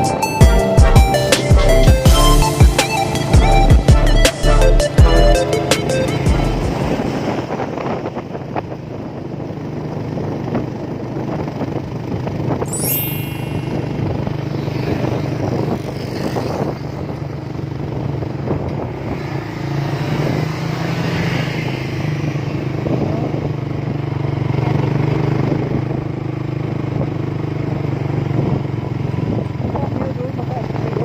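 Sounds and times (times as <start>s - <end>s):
road and rushing air noise: 1.0s - 10.2s.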